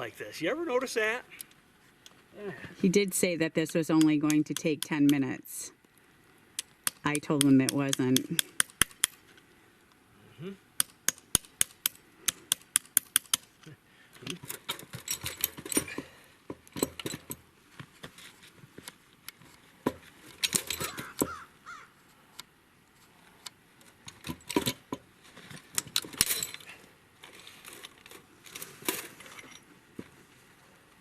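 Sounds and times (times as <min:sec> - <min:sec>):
hand tools tapping metal and ice: 0:03.6 - 0:05.4, 0:06.6 - 0:09.2, 0:20.4 - 0:21.4.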